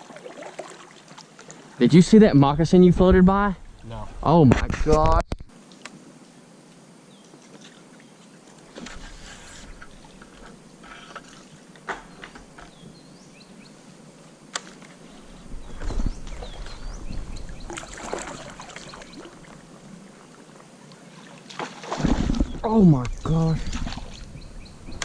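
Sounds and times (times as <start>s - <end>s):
paddle splashes: 0.0s - 1.8s, 17.4s - 24.3s
water sloshing: 0.0s - 1.8s, 14.6s - 24.4s.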